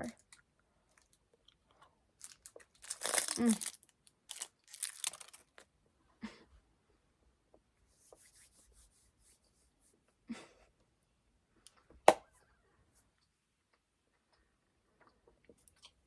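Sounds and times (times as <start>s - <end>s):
wrapper rustling: 2.2s - 5.6s.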